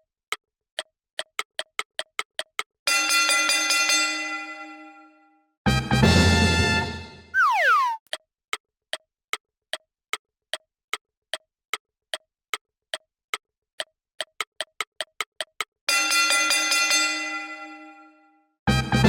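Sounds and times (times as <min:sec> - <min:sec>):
falling whistle: 0:07.4 - 0:08.0.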